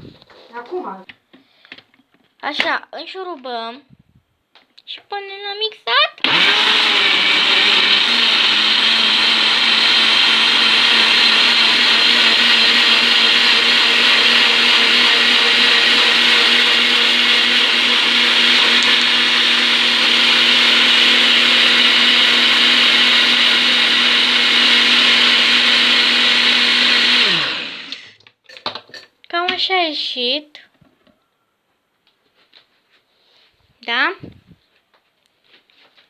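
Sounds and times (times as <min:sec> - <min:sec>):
blender motor running: 0:06.2 - 0:28.2.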